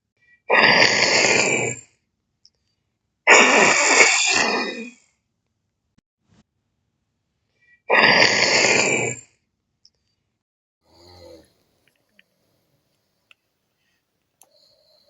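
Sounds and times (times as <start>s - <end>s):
person making rasping throat noises: 7.9s - 9.2s.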